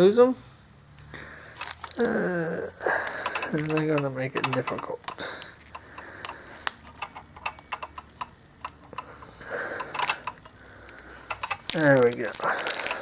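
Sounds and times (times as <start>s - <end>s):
packaging rustle: 0.6s - 2.1s, 11.2s - 13.0s
small screws and parts clicking: 1.5s - 2.1s, 3.0s - 13.0s.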